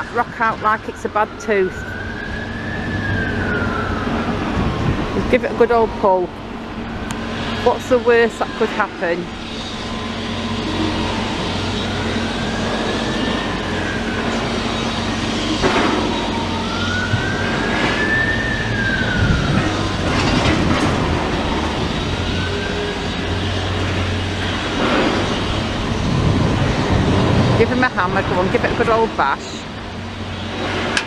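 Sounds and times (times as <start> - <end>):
excavator diesel engine humming: 0.0 - 31.0
rising and falling wail: 16.0 - 24.4.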